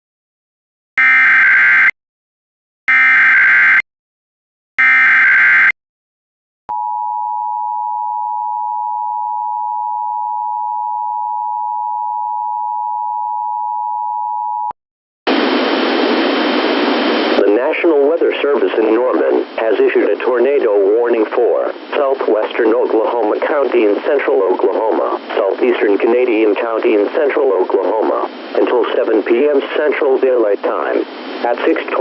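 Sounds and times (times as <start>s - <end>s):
screeching data tone bursts: 4.8s - 5.7s
two-tone attention signal: 4.8s - 5.8s
radio static hiss: 15.3s - 32.0s.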